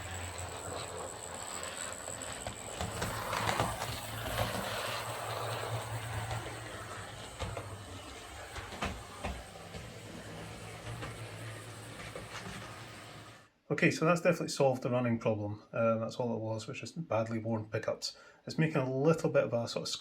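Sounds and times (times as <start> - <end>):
wheels clicking over rail joints: 0.0 - 13.4
model train motor whirring: 0.0 - 13.5.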